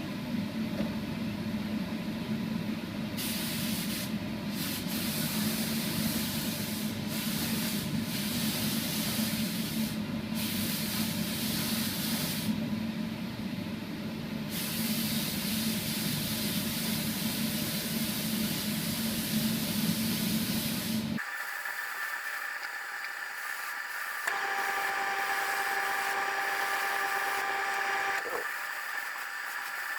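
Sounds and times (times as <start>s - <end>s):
spray gun hissing: 20.7s - 29.9s.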